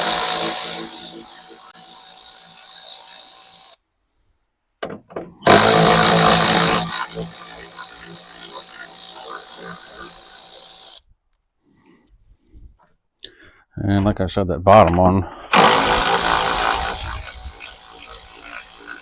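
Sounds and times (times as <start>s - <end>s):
cordless power driver running: 0.0s - 3.8s, 5.4s - 11.0s, 15.5s - 19.0s.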